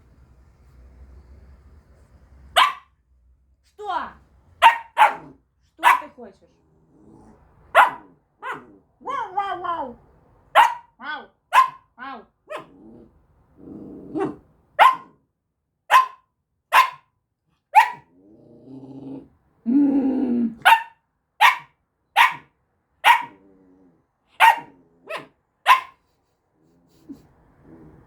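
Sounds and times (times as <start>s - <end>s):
puppy barking: 2.6s - 2.9s, 4.6s - 6.2s, 7.7s - 8.7s, 10.5s - 11.9s, 12.5s - 12.7s, 14.2s - 15.2s, 15.9s - 17.1s, 17.7s - 18.1s, 20.6s - 23.4s, 24.3s - 26.0s
low grumbling growl: 6.5s - 7.7s, 12.7s - 14.4s, 18.1s - 20.6s, 23.3s - 24.1s, 27.3s - 28.0s.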